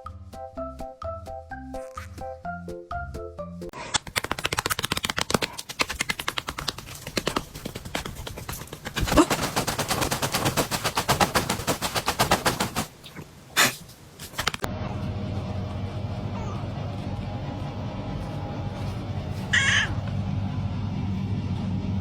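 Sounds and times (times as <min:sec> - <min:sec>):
rapid sharp clicks: 0:03.9 - 0:12.9.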